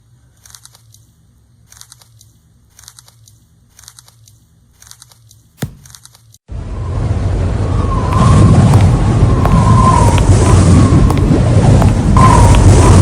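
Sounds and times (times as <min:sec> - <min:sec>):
crackly clicks: 0:00.4 - 0:01.1, 0:01.7 - 0:06.4
loud rushing noise: 0:07.1 - 0:13.0.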